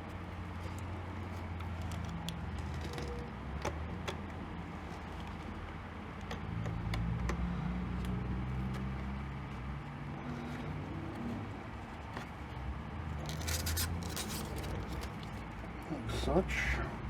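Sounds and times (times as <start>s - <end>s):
plastic clicks: 0.1s - 9.7s
rustling: 7.9s - 15.8s.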